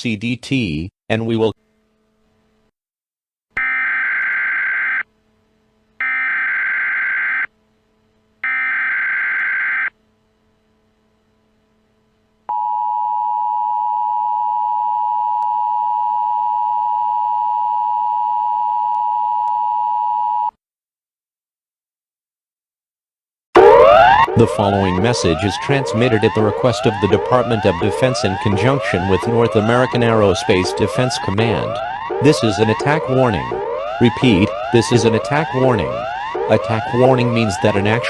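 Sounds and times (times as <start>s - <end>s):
buzzing data screech: 3.6s - 5.0s, 6.0s - 7.5s, 8.4s - 9.9s
steady dual tone: 3.6s - 20.5s, 23.6s - 38.0s.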